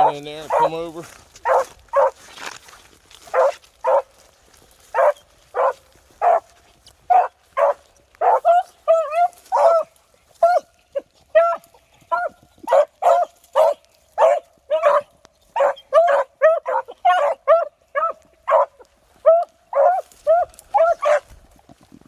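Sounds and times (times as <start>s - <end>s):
hounds baying: 0.0s - 2.2s, 3.3s - 4.2s, 4.9s - 21.5s.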